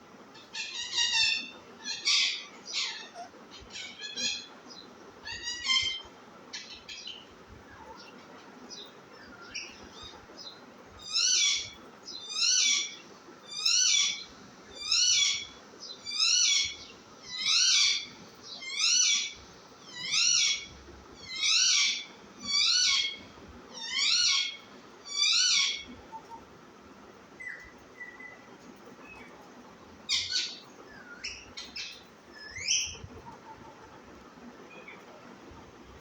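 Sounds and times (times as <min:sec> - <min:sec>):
baby parrot high-pitched call: 0:00.4 - 0:04.5, 0:05.2 - 0:06.7, 0:11.0 - 0:25.9.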